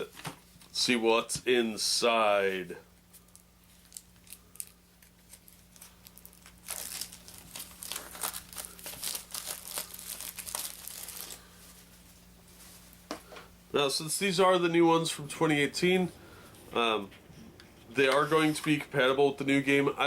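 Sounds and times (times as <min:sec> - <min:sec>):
plastic wrapping crinkling: 0:03.2 - 0:13.1.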